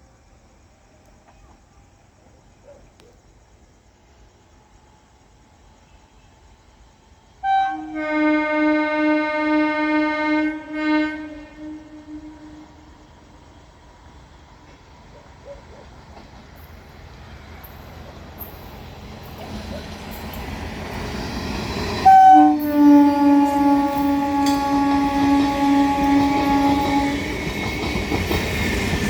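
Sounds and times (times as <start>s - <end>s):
low rumble of train: 0.0s - 29.0s
train horn blast: 7.4s - 13.1s, 21.8s - 27.5s.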